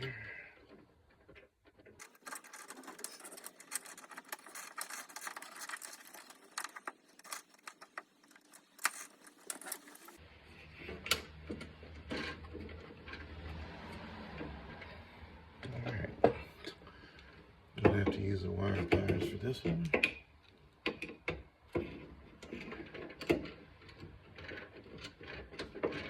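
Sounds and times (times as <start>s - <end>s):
small metal parts clicking and rattling: 0.6s - 10.2s, 21.8s - 26.0s.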